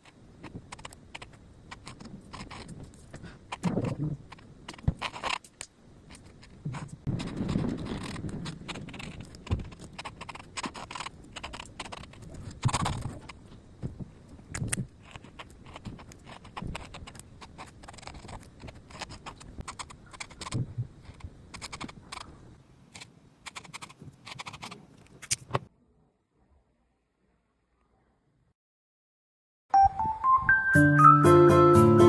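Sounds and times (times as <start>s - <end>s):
pen scratching on paper: 0.0s - 5.4s, 6.1s - 13.4s, 15.0s - 22.3s, 23.0s - 24.8s.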